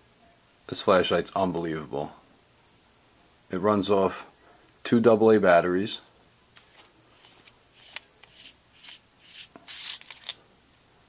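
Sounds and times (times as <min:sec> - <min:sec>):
hands scraping metal flashlight: 0:07.8 - 0:10.4.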